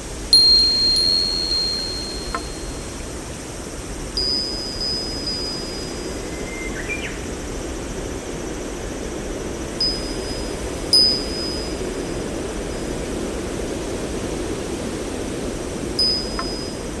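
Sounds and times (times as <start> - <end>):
wind chime ringing: 0.3 - 3.2, 4.1 - 6.4, 9.8 - 13.0, 16.0 - 17.0
low rushing background noise: 0.3 - 6.9.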